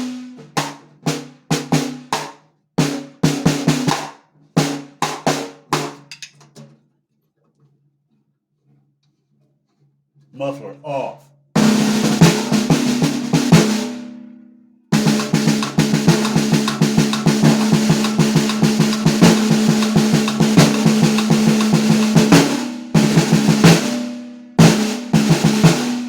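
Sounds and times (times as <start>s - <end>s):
snare drum rolls and strokes: 2.9s - 4.8s, 11.6s - 14.2s, 15.0s - 26.0s.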